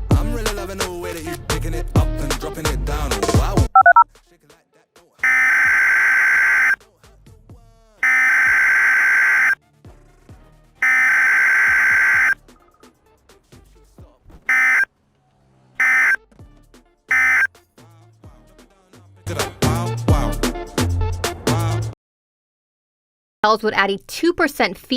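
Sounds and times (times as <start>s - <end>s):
music: 0.3s - 3.4s, 18.2s - 21.9s
buzzy digital data bursts: 5.2s - 6.8s, 8.0s - 9.6s, 10.8s - 12.4s, 14.5s - 14.8s, 15.8s - 16.2s, 17.1s - 17.5s.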